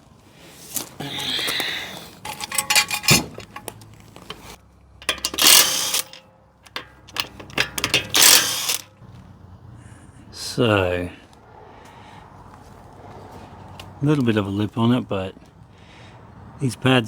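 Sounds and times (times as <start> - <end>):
harsh rattling and scraping: 0.4 - 9.0
tools and brake parts clinking: 0.7 - 9.0.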